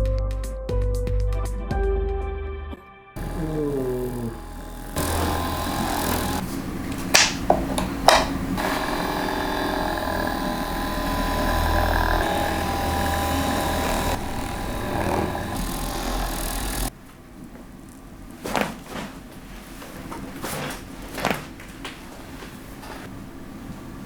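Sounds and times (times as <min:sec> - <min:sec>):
small motorised tool buzzing: 0:03.2 - 0:07.1, 0:07.8 - 0:16.9.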